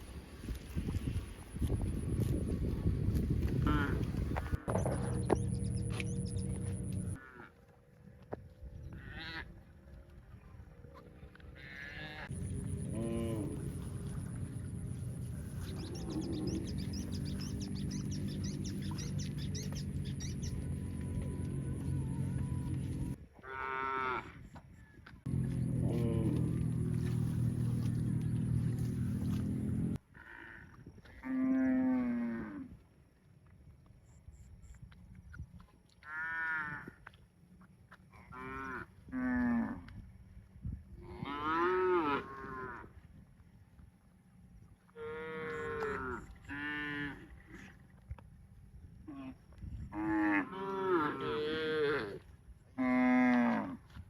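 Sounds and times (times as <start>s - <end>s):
low outdoor rumble: 0.0s - 23.2s, 25.2s - 30.0s
small birds chirping: 4.7s - 7.2s, 15.4s - 23.2s
cattle mooing: 11.6s - 14.4s, 50.0s - 52.2s.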